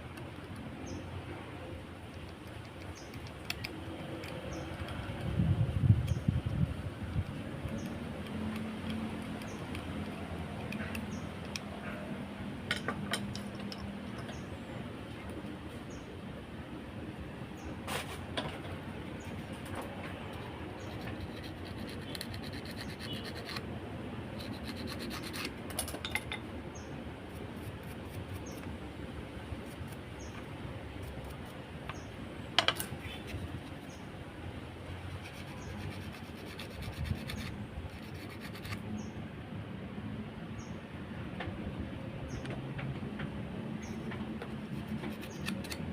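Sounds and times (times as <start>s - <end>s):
hands scraping small parts: 2.0s - 5.4s, 6.0s - 11.8s, 19.3s - 23.7s, 24.3s - 26.2s, 32.6s - 34.0s, 35.1s - 38.9s, 44.5s - 45.9s.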